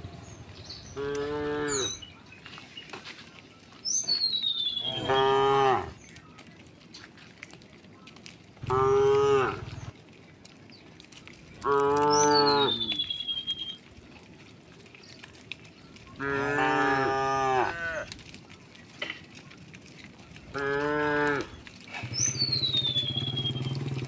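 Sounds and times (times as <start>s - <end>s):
cattle mooing: 0.8s - 2.0s, 4.8s - 6.0s, 8.6s - 9.9s, 11.6s - 13.0s, 16.2s - 18.1s, 20.5s - 24.0s.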